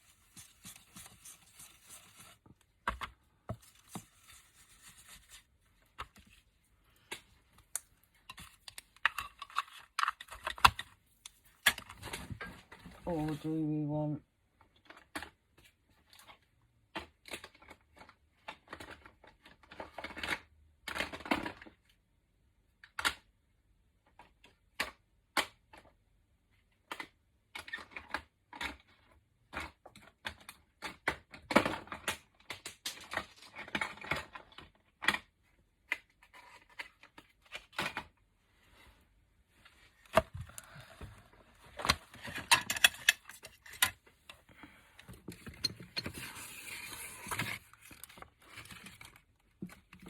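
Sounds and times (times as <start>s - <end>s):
rustling and scraping: 0.0s - 13.5s, 36.1s - 50.0s.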